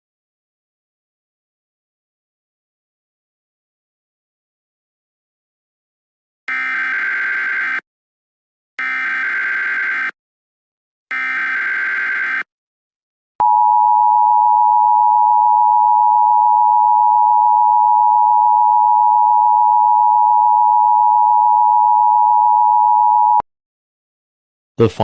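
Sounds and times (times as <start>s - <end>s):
digital data screech: 11.1s - 12.5s.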